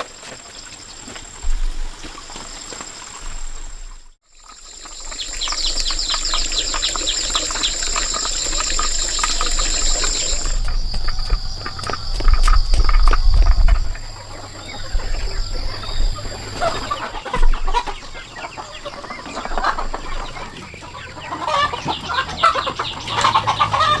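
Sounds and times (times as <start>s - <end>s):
insects whining and chirping: 0.0s - 24.0s
loud low rumble: 9.4s - 16.6s.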